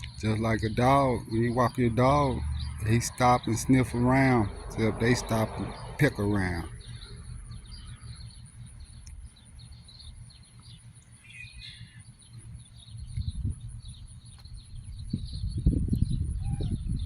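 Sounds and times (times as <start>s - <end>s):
low rumbling noise: 0.0s - 8.9s
bird chirps: 0.0s - 17.0s.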